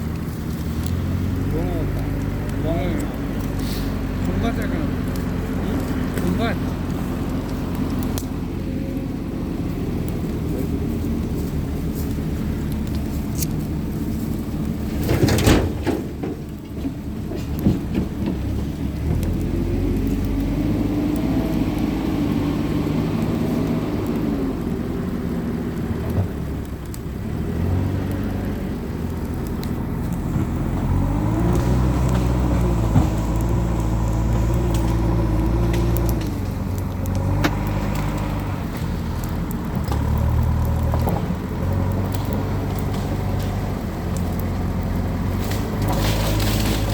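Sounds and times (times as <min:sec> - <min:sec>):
wood bonfire crackling: 0:00.0 - 0:46.9
motor engine drone: 0:16.2 - 0:46.9.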